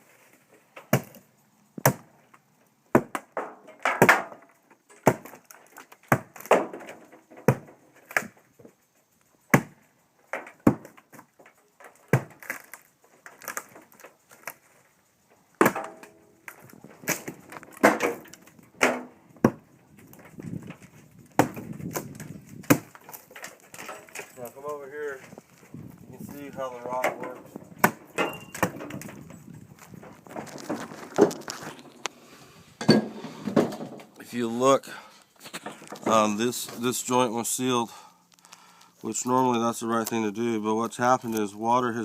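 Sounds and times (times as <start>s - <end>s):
wood cracking and snapping: 2.9s - 8.4s, 10.3s - 14.7s, 15.6s - 24.5s, 27.1s - 32.1s.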